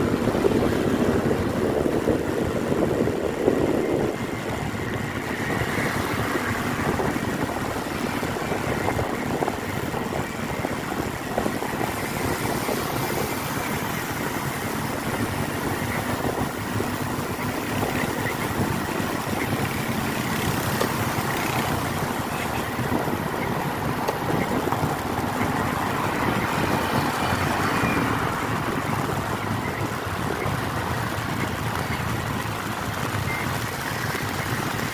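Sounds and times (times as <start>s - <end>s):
vehicle engine and road noise: 0.0s - 34.9s.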